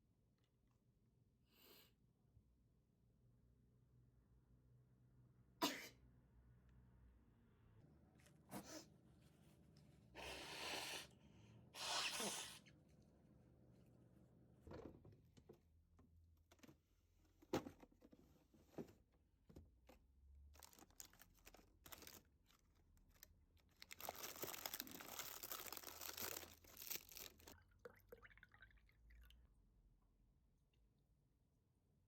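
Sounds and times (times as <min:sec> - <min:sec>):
paper or plastic crinkling: 0:20.5 - 0:27.6.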